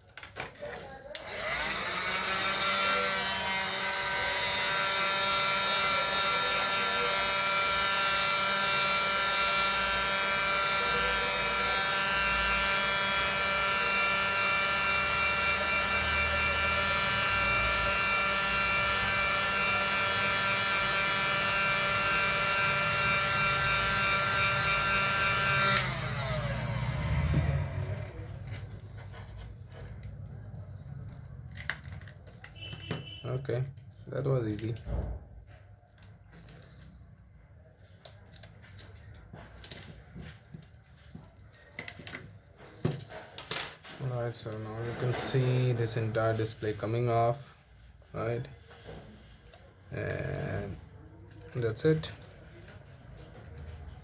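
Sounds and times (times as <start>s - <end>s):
hot air gun running: 1.3s - 28.2s.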